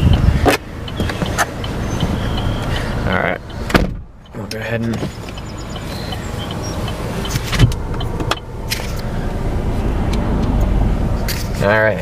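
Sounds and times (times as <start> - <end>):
car door clicks: 0.4 - 2.7, 3.5 - 5.4, 6.5 - 9.0
car door thump: 3.7 - 4.2, 7.4 - 8.4.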